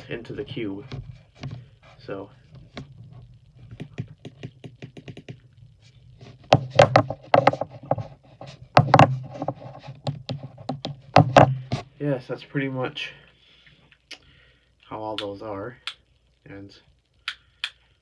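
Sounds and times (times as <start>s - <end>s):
low steady hum: 0.0s - 18.0s
plastic clacks and knocks: 6.5s - 8.0s.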